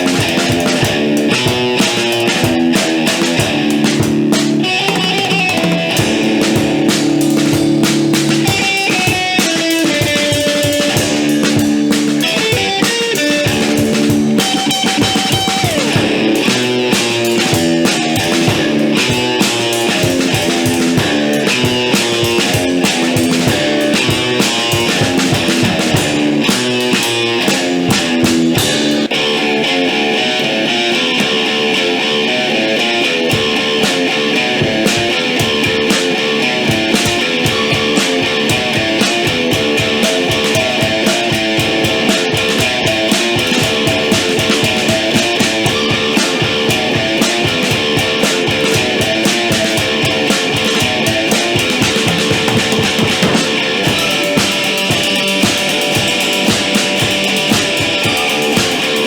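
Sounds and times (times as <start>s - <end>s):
drum kit beat: 0.0s - 29.2s, 30.7s - 59.0s
electric guitar riffing: 0.0s - 59.0s.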